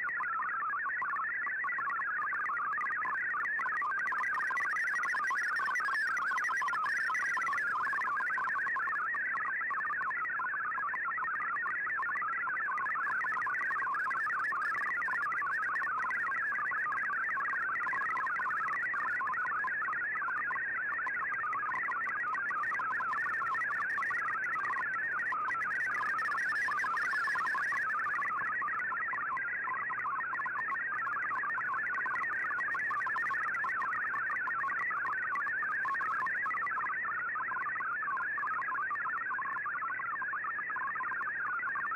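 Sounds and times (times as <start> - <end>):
warbling digital data tones: 1.7 - 10.2, 11.4 - 28.6.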